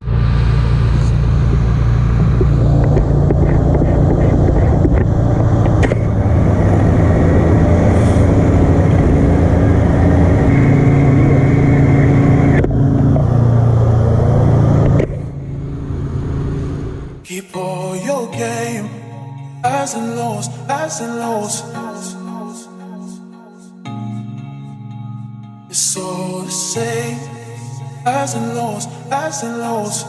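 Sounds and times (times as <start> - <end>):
engine running loudly: 0.0 - 17.2.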